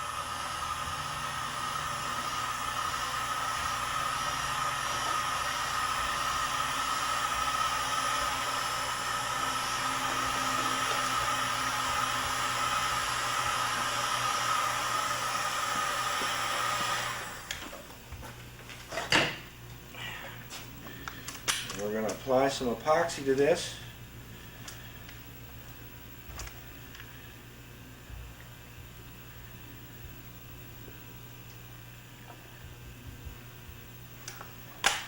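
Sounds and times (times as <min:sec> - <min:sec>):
heat gun blowing: 0:00.0 - 0:18.4.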